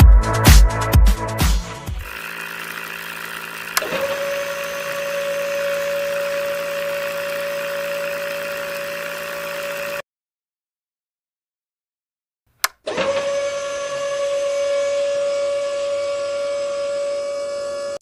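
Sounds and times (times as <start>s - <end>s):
electric motors whirring: 1.9s - 10.0s, 12.9s - 18.0s
switch click: 12.6s - 12.8s.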